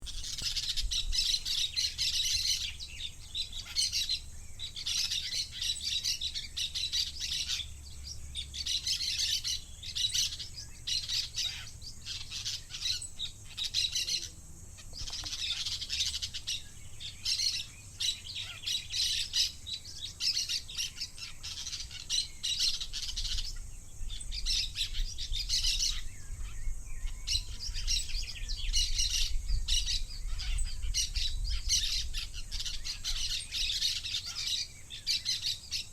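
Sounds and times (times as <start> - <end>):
parakeets chattering: 8.4 - 23.6.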